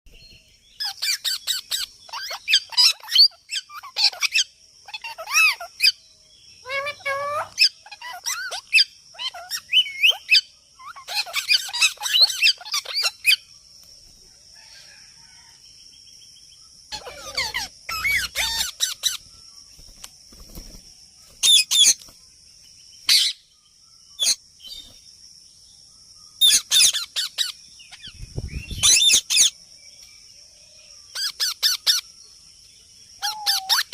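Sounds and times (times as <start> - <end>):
baby parrot chirping: 0.8 - 6.0, 6.6 - 13.4, 16.9 - 19.2, 21.4 - 22.0, 26.4 - 28.1, 28.7 - 29.6, 31.1 - 32.0, 33.2 - 33.9.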